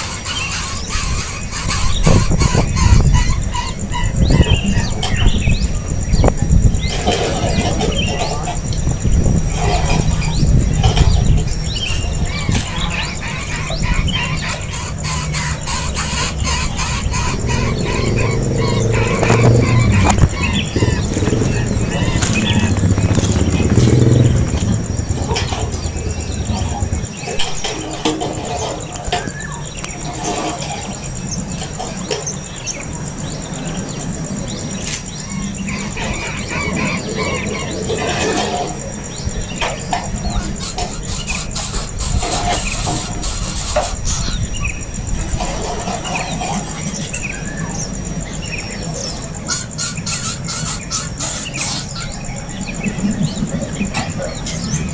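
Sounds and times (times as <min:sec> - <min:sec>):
birds chirping: 0:00.0 - 0:54.9
steady high pulsing buzz: 0:00.0 - 0:54.9
low rumble: 0:02.7 - 0:27.7.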